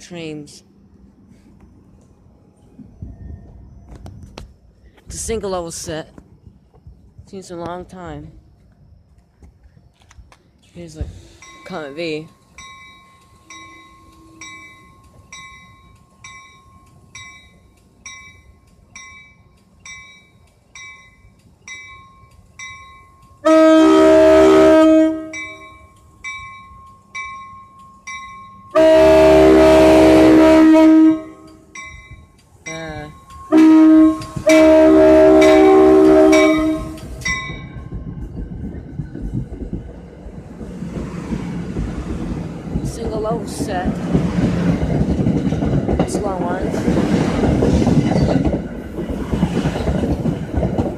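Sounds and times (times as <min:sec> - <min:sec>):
train rumbling past: 0:00.0 - 0:50.9
crossing warning bell ringing: 0:11.2 - 0:38.4
train horn blasts: 0:13.4 - 0:14.8, 0:23.4 - 0:25.6, 0:28.7 - 0:31.6, 0:33.5 - 0:37.2.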